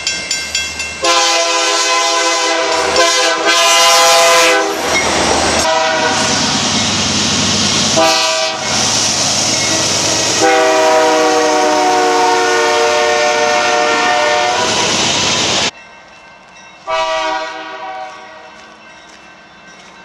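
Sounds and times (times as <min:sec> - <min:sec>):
passing train: 0:00.0 - 0:20.0
locomotive air horn chord: 0:01.0 - 0:04.8, 0:05.6 - 0:06.4, 0:08.0 - 0:08.8, 0:09.7 - 0:15.0, 0:16.8 - 0:18.6
second horn blast: 0:01.0 - 0:04.8, 0:05.6 - 0:06.4, 0:08.0 - 0:08.6, 0:10.3 - 0:14.9, 0:16.9 - 0:18.5.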